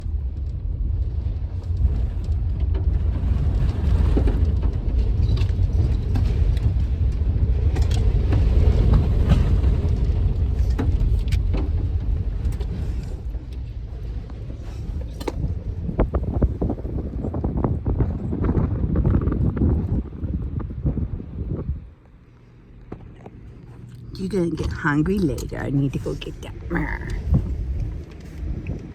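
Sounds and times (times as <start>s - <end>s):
wind buffeting microphone: 0.0s - 28.9s.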